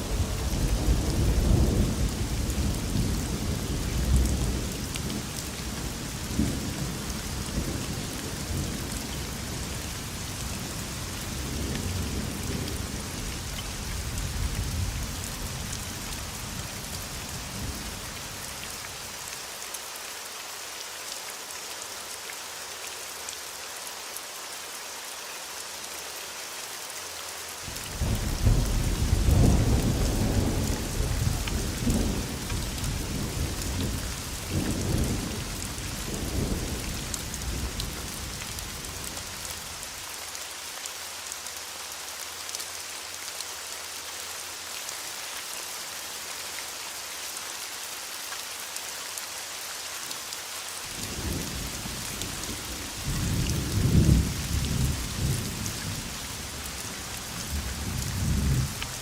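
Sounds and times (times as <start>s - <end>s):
heavy rain hissing: 0.0s - 59.0s
low thunder rumble: 28.0s - 35.4s.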